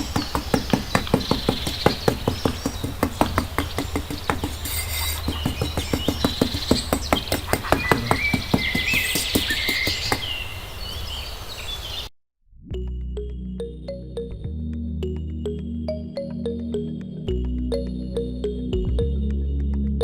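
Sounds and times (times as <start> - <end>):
quick uneven taps: 0.0 - 10.5
birds chirping: 0.0 - 12.1.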